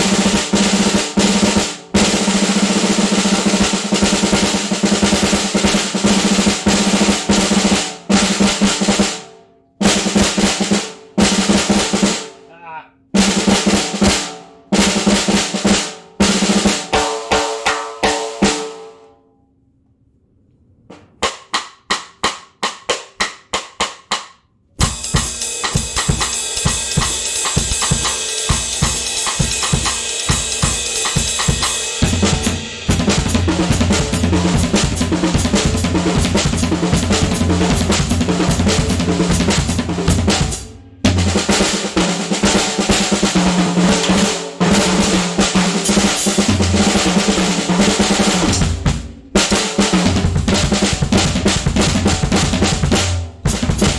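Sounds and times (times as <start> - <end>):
snare drum hits and roll: 0.0 - 9.2, 21.2 - 53.9.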